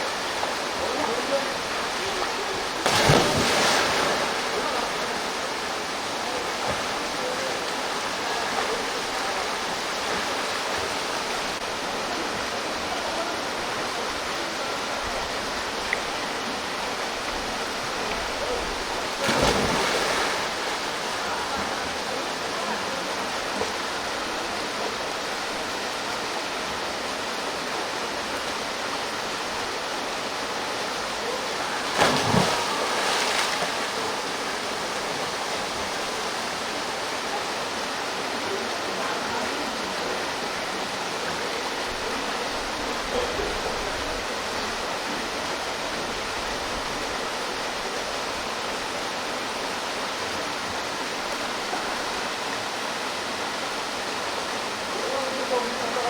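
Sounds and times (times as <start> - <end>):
waterfall rushing: 0.0 - 41.8
loud splash in water: 2.8 - 4.8, 19.2 - 20.7, 31.8 - 34.1.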